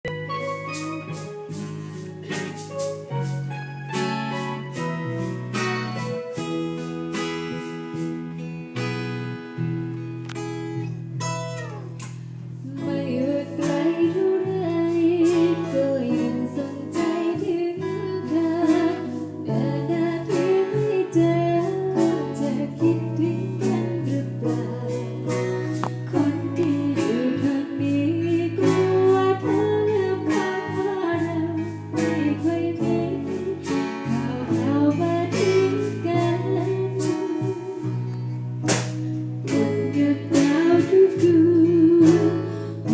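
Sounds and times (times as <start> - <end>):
strummed guitar: 0.0 - 42.9
woman singing: 12.6 - 38.1, 39.5 - 42.9.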